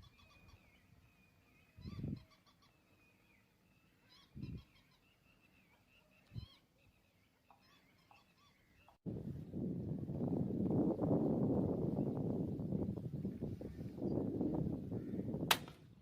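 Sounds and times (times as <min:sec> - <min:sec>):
birds chirping faintly: 0:00.0 - 0:09.6.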